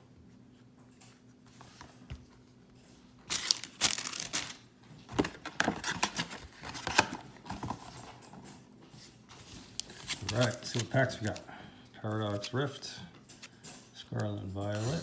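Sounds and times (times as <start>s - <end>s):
crinkly packaging rustling: 2.9s - 11.5s.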